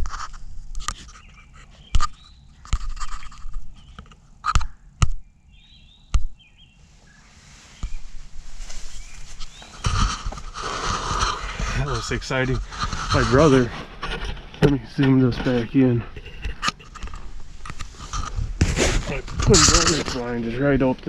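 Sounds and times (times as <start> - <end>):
rustling noise: 0.0 - 4.7, 6.8 - 21.0
small birds chirping: 0.7 - 13.7
sharp knocks and clicks: 1.9 - 5.2, 6.1 - 6.4.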